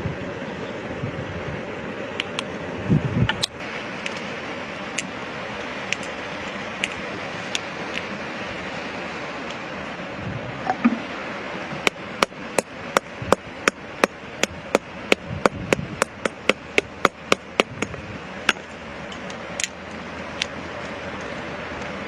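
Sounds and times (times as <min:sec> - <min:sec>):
hammer striking rock: 0:11.8 - 0:18.7.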